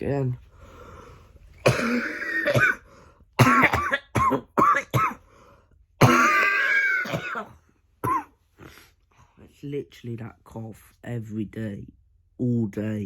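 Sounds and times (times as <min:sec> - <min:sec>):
man coughing: 0:01.6 - 0:05.2, 0:06.0 - 0:08.8.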